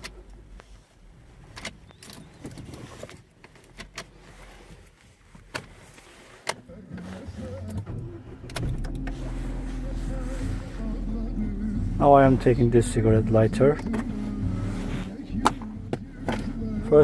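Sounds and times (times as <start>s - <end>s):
car engine starting and idling: 0.0s - 17.0s
ignition clicks: 1.4s - 4.2s, 6.4s - 17.0s.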